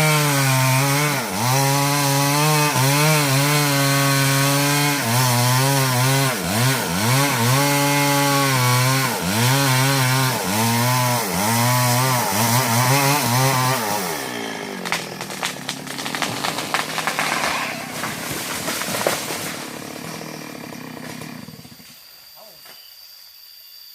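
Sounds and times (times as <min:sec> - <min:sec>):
chainsaw cutting wood: 0:00.0 - 0:22.0
wood cracking and snapping: 0:12.4 - 0:21.4.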